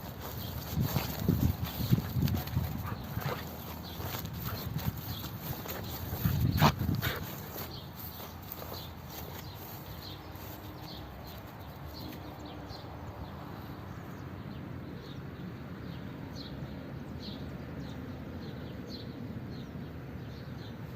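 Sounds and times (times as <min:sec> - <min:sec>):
bird chirping: 0:00.0 - 0:12.8.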